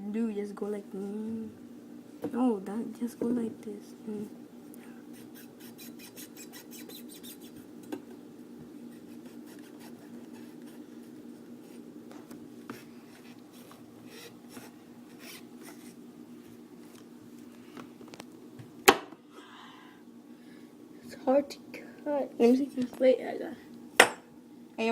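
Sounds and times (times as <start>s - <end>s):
knife rasping on rubber ball: 5.1s - 7.7s, 8.9s - 11.1s, 14.1s - 16.0s.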